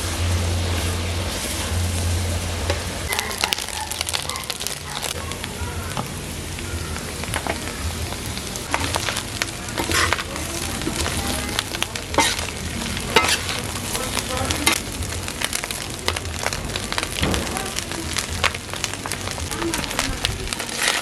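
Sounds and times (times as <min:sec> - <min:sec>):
food sizzling in a pan: 0:00.0 - 0:21.0
utensil clinking on pan: 0:12.1 - 0:14.8.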